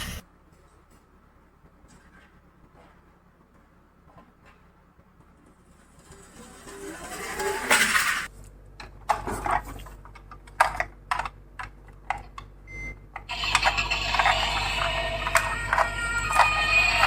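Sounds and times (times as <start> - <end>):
toy cars clattering: 5.9 - 8.3, 13.3 - 17.0.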